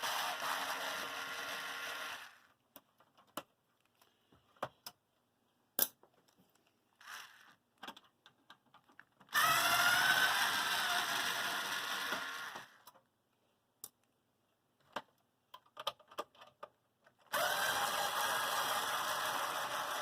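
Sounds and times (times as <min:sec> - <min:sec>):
small clicks and knocks: 0:02.7 - 0:05.0, 0:07.8 - 0:09.3, 0:14.8 - 0:17.3
electric screwdriver whining: 0:09.3 - 0:12.8, 0:17.3 - 0:20.0.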